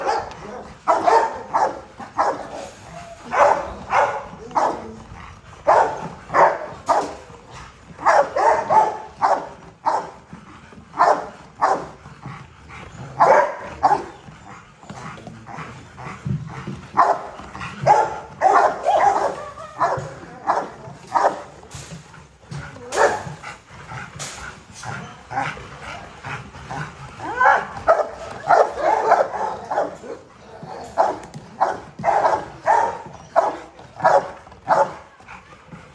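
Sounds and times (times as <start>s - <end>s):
dog barking: 0.0s - 2.6s, 3.2s - 4.9s, 5.6s - 7.2s, 8.0s - 10.2s, 11.0s - 11.9s, 13.2s - 14.2s, 17.0s - 21.5s, 22.8s - 23.3s, 27.2s - 30.1s, 30.9s - 35.0s.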